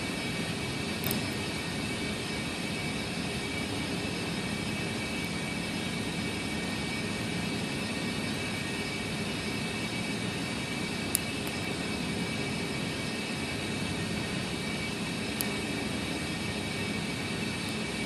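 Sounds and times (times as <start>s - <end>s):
airy background hum: 0.0s - 18.0s
faint high whine: 0.0s - 18.0s.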